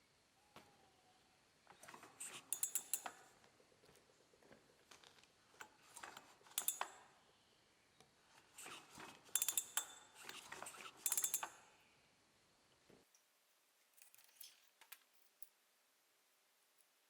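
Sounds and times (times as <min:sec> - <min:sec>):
metal tools clinking: 0:08.7 - 0:11.5, 0:14.0 - 0:15.5.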